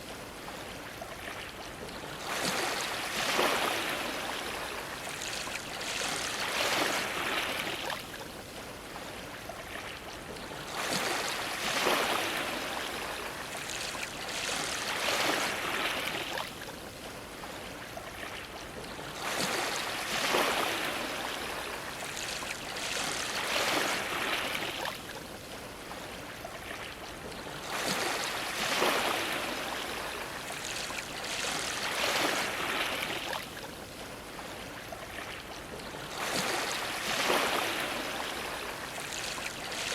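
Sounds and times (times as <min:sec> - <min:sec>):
waves splashing against dock: 0:00.0 - 0:09.9, 0:18.9 - 0:39.9.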